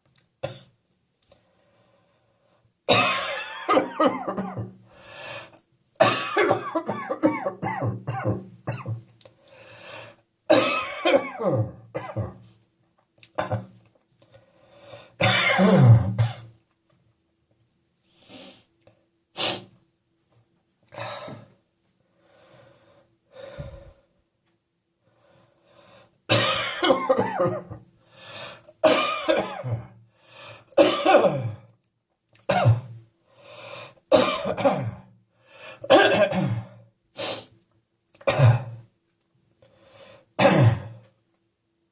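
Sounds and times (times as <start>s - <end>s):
breaths: 1.3s - 2.7s, 4.9s - 5.6s, 9.2s - 10.3s, 14.2s - 15.2s, 20.9s - 24.2s, 25.0s - 26.2s, 28.0s - 28.8s, 30.1s - 30.8s, 33.2s - 34.1s, 35.3s - 35.9s, 39.6s - 40.4s
person coughing: 2.9s - 4.8s, 6.0s - 9.0s, 10.5s - 12.4s, 15.2s - 16.5s, 26.3s - 27.8s, 28.8s - 30.0s, 30.8s - 31.7s, 32.5s - 33.0s, 34.1s - 35.1s, 35.8s - 36.8s, 38.3s - 38.8s, 40.4s - 41.0s.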